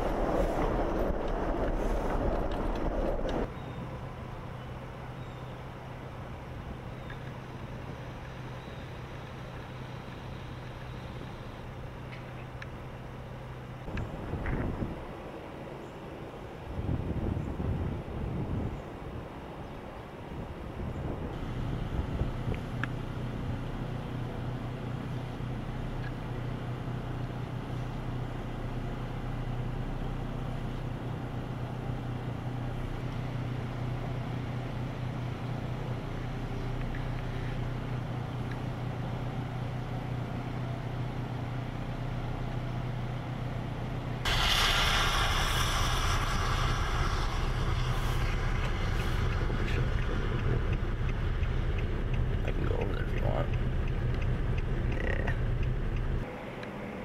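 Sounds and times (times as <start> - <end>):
engine humming: 0.0 - 57.0
rushing hissing noise: 44.2 - 51.8.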